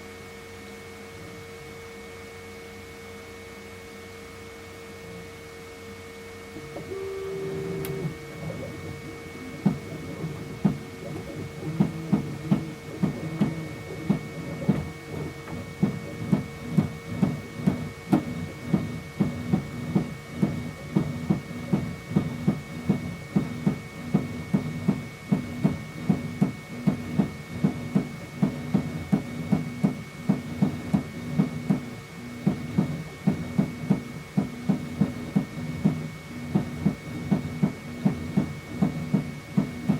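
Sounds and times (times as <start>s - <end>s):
printer motors humming: 6.5s - 39.9s
sharp drum-like knocks: 9.6s - 39.9s.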